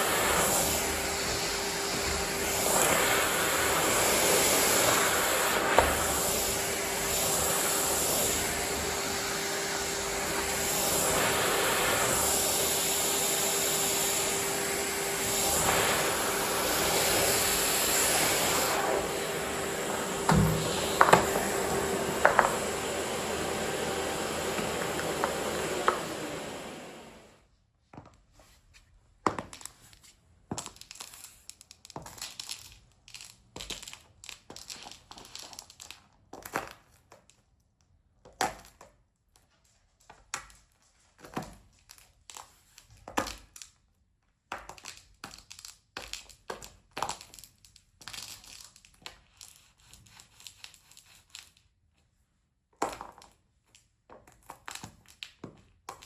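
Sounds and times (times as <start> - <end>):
vacuum cleaner running: 0.0 - 27.4.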